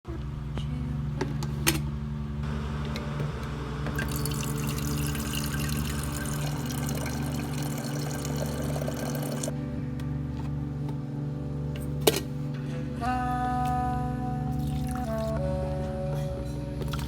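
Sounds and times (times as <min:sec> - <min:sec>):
coffee maker hum: 0:02.4 - 0:09.5, 0:14.6 - 0:15.4
water trickling in coffee maker: 0:04.0 - 0:09.5, 0:14.6 - 0:15.2.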